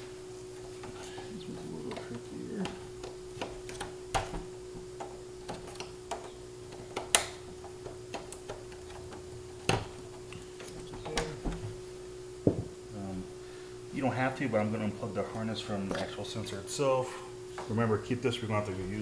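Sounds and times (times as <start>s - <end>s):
faint steady hum: 0.0s - 19.0s
clips snapping: 0.6s - 11.8s
plastic clips clicking and rattling: 5.0s - 11.4s.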